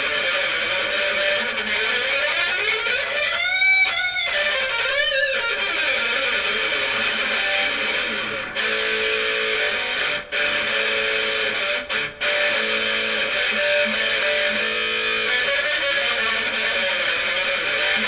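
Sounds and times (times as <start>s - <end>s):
electric guitar strumming chords: 0.0s - 18.0s.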